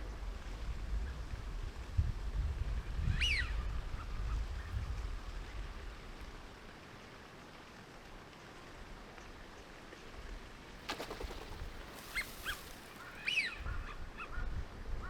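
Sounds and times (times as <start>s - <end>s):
wind rumble on microphone: 0.0s - 6.5s, 13.4s - 15.0s.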